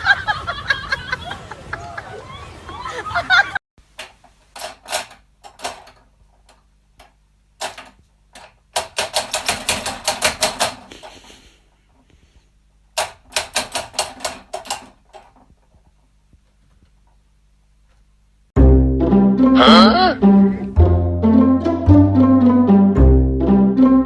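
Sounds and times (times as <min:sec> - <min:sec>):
rapid sharp clicks: 0:04.0 - 0:11.2, 0:13.0 - 0:15.5.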